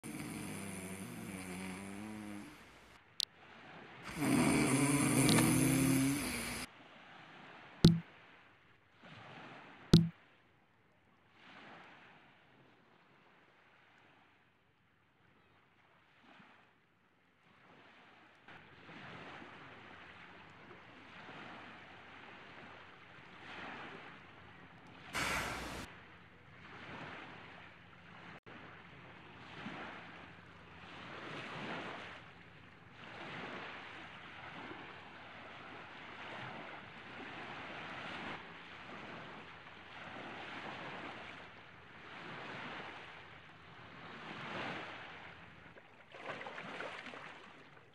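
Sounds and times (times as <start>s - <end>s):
person snoring: 0.0s - 2.8s, 4.1s - 6.7s, 25.2s - 25.9s.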